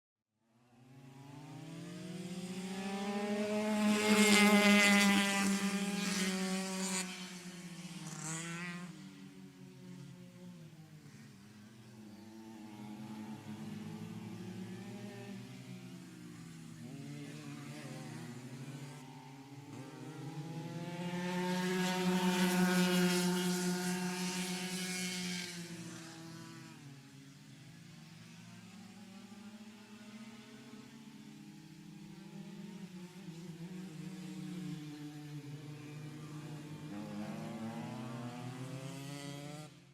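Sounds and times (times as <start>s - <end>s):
go-kart engine passing: 0.8s - 39.9s.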